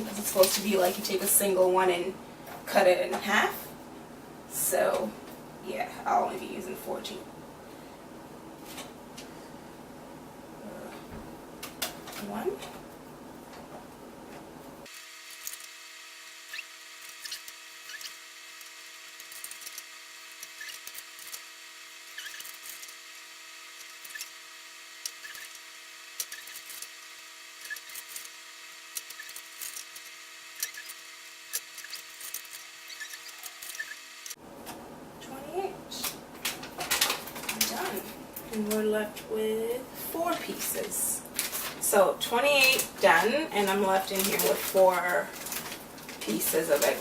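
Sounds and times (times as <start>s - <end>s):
steady hum of several tones: 0.0s - 47.0s
scissors snipping wrappers: 42.6s - 47.0s.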